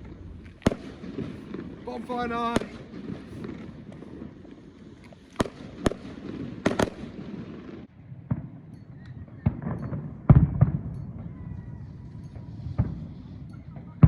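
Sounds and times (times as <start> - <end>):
fireworks bangs and cracks: 0.0 - 11.4, 12.2 - 14.0.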